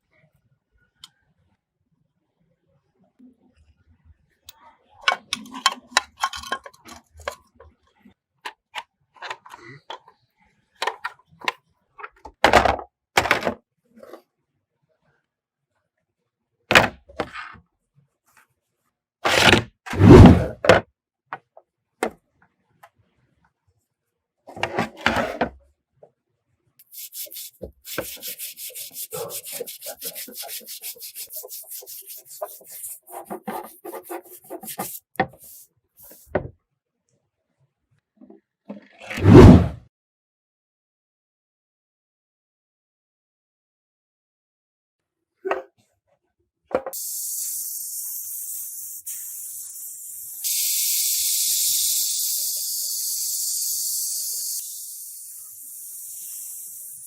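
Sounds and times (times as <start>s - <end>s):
rubbing or scraping strokes: 19.2s - 20.6s, 26.8s - 36.3s.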